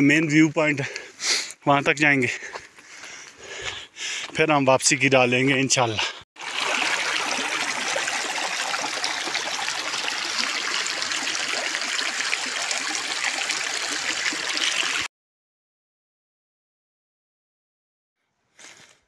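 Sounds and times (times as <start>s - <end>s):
stream water rushing: 6.4s - 15.1s.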